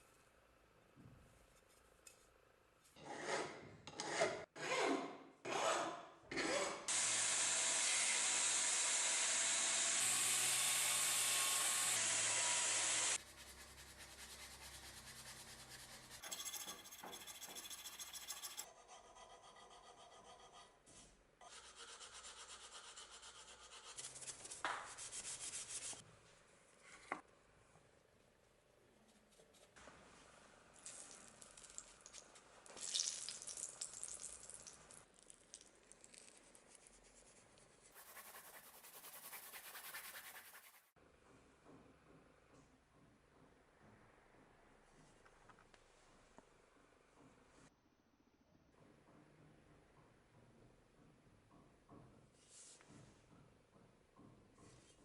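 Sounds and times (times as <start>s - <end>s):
filing or sanding wood: 10.0s - 26.0s, 36.8s - 41.0s
scraping and rubbing: 13.4s - 18.7s, 35.9s - 41.0s.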